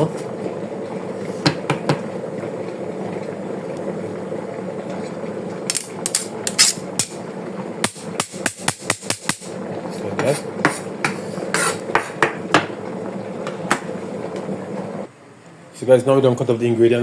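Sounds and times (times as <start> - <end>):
pot cooking on stove: 0.0 - 17.0
utensil knocking in kitchen: 1.4 - 2.2, 7.8 - 9.6, 10.2 - 14.0.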